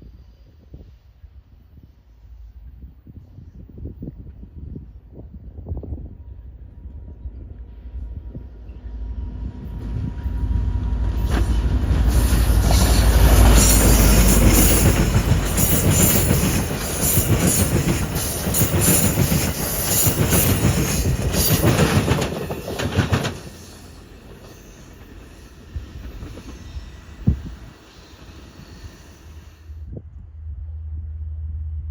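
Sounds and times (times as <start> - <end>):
train wheels clicking over rail joints: 11.1 - 29.5
high metallic hiss: 12.1 - 21.8.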